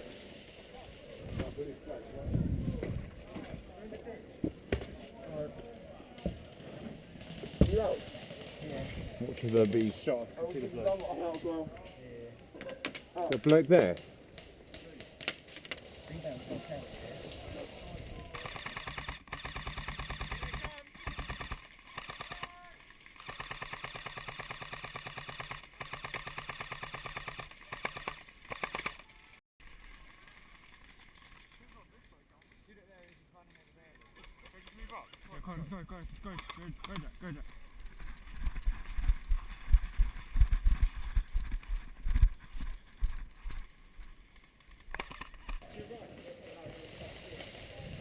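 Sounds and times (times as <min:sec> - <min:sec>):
airsoft rifles firing full auto: 0:18.4 - 0:22.6, 0:23.2 - 0:29.0
running footsteps: 0:32.4 - 0:44.2
camera knocking and rustling: 0:36.4 - 0:44.1.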